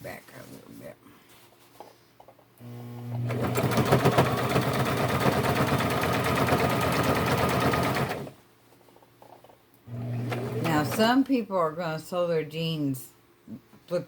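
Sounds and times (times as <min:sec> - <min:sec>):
sewing machine stitching: 0:02.6 - 0:08.4, 0:09.9 - 0:11.1.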